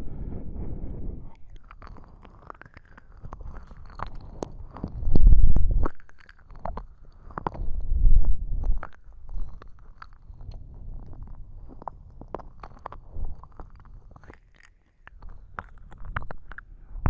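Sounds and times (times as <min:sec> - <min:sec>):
low muffled rumble: 0:00.0 - 0:01.7, 0:04.8 - 0:06.0, 0:07.5 - 0:09.6, 0:10.3 - 0:13.6
wet mouth clicks and smacks: 0:01.3 - 0:16.8.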